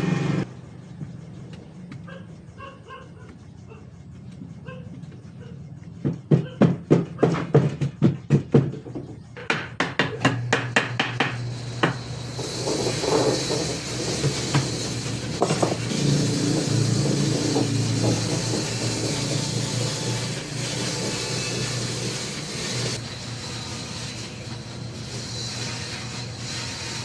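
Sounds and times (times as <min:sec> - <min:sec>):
hammering on wood: 0:05.9 - 0:12.0, 0:15.4 - 0:23.0.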